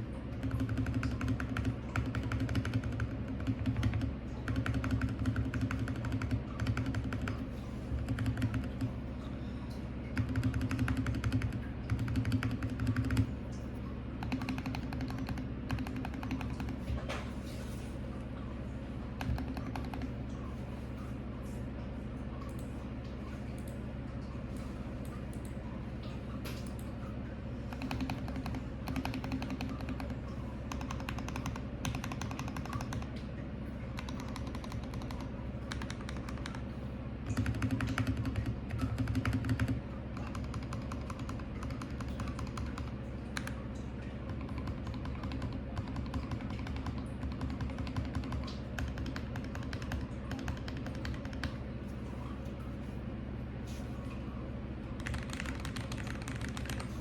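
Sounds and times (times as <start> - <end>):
mechanical keyboard typing: 0.3 - 7.4, 8.0 - 8.9, 10.2 - 13.2, 14.2 - 16.8, 27.7 - 33.1, 34.0 - 36.6, 37.3 - 43.6, 44.3 - 51.6, 55.0 - 57.0.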